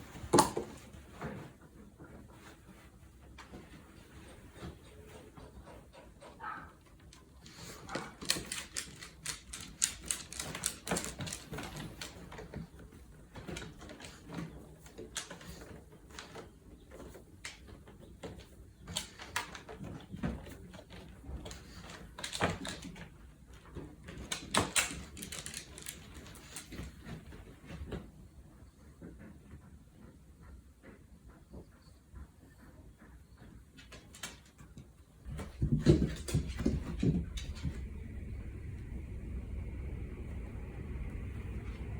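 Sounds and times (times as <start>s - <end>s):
dog claws tapping on floor: 7.0s - 23.1s, 24.0s - 27.2s, 33.8s - 37.9s.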